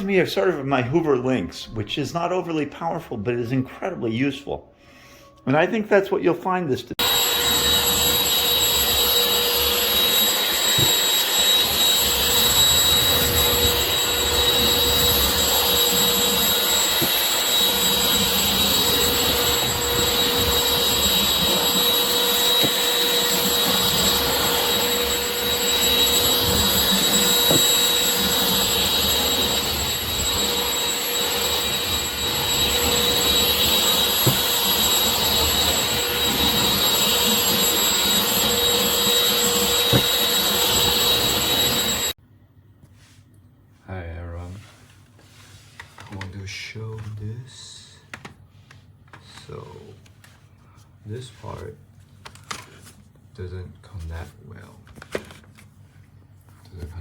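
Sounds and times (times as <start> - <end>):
stick vacuum running: 7.0 - 42.2.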